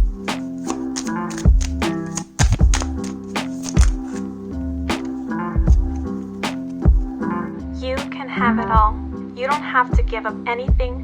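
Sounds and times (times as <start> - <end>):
held synth notes over beat: 0.0 - 7.4, 8.4 - 9.2
deep kick drum: 2.4 - 3.0, 5.6 - 6.0, 6.8 - 7.2, 8.8 - 9.1, 10.0 - 11.0.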